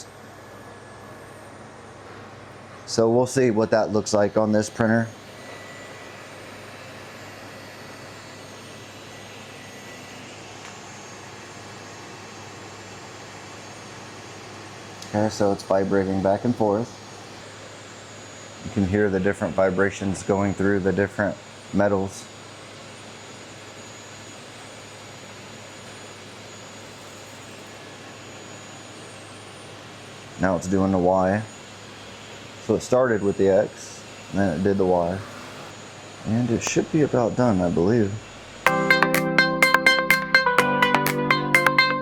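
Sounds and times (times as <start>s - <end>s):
printer mechanical hum and buzz: 0.0s - 38.7s
printer vibrating hum: 4.0s - 21.7s.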